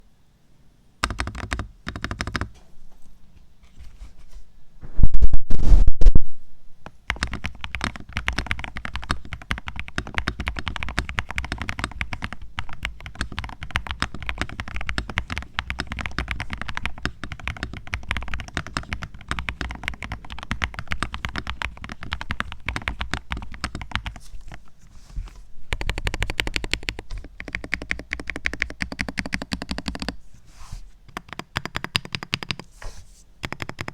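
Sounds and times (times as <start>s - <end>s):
mechanical keyboard typing: 1.0s - 2.5s, 7.0s - 24.6s, 25.7s - 30.2s, 31.1s - 32.7s, 33.4s - 33.9s
loud keyboard clatter: 7.1s - 24.2s.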